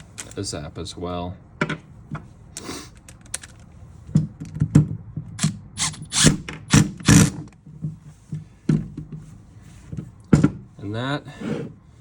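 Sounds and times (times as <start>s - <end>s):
impact wrench bursts: 5.4s - 7.4s.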